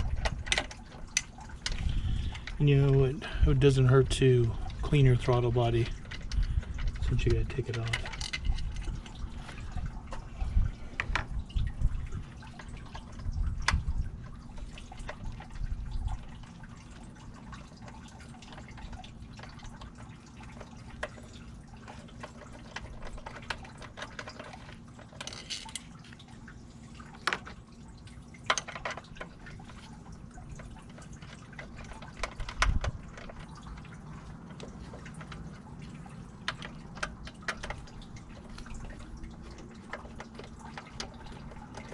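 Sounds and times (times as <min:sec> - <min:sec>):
small metal parts clicking: 0:07.7 - 0:09.0, 0:22.3 - 0:25.9.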